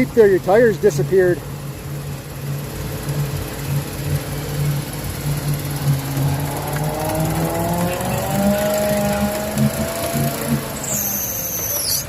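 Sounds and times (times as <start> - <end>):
pickup engine running under load: 0.0 - 12.0
rising whine: 1.4 - 12.0.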